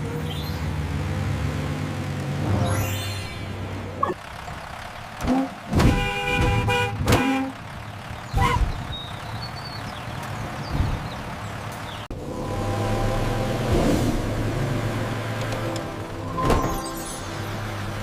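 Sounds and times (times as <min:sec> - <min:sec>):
bus horn honking: 0:05.2 - 0:07.7, 0:08.3 - 0:08.8.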